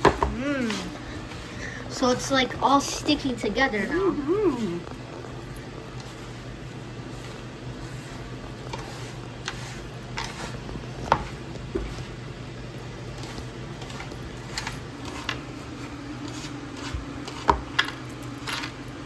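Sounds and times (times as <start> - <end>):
hands rubbing grains in bowl: 5.4 - 12.2, 13.1 - 17.5.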